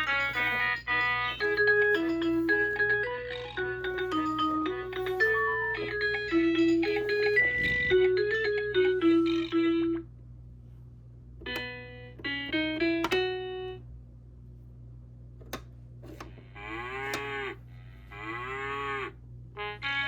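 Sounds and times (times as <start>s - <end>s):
toy beeping melody: 0.0s - 10.0s, 11.4s - 13.5s
toy button clicks: 11.4s - 13.3s
recorded cow moos: 16.6s - 19.2s.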